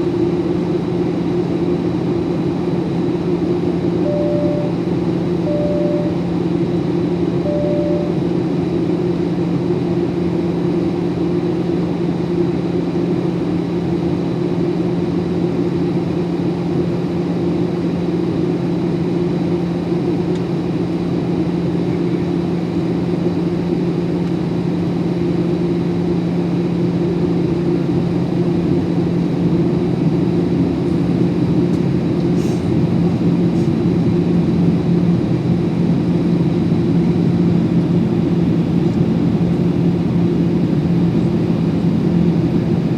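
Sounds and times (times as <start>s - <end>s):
aircraft cabin engine drone: 0.0s - 42.9s
low hum: 4.0s - 8.8s.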